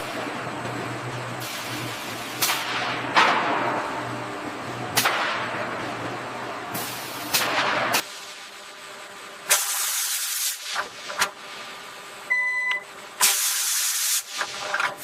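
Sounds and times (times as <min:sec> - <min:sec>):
sharp cracks with hiss: 0:05.0 - 0:05.4, 0:06.8 - 0:08.5, 0:09.5 - 0:11.3, 0:13.2 - 0:14.8.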